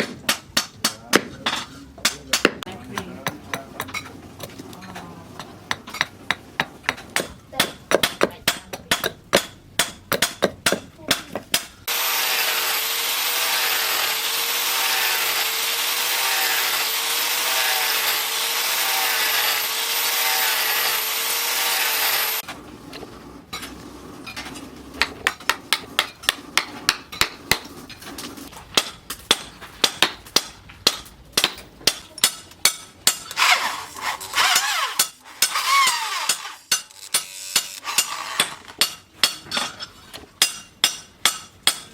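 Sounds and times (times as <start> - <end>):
hammer on steel anvil: 5.7 - 11.8, 28.7 - 33.4, 34.6 - 41.9
angle grinder whining: 11.9 - 22.5, 33.3 - 38.7.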